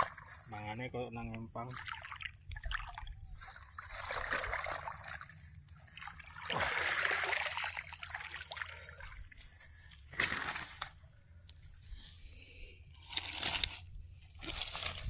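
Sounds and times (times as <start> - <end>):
water sloshing and splashing: 0.0 - 10.8.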